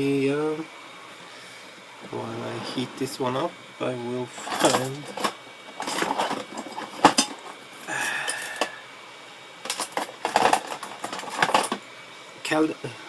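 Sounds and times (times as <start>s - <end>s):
metal tools clinking: 4.3s - 8.8s, 9.6s - 11.8s.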